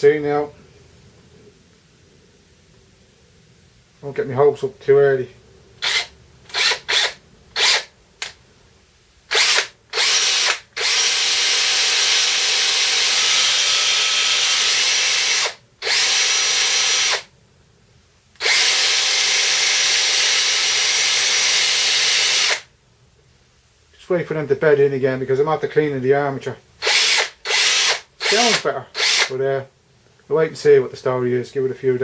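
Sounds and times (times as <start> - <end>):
cordless drill motor running: 5.8 - 7.9, 9.3 - 17.3, 18.4 - 22.7, 26.8 - 29.3.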